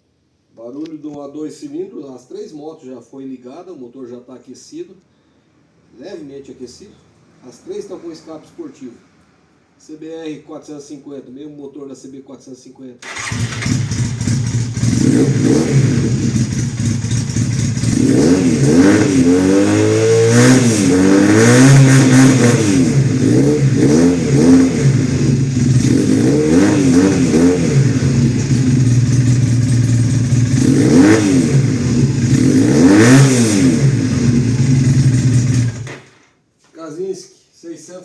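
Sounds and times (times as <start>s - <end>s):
motorcycle engine idling and revving: 13.0s - 36.2s.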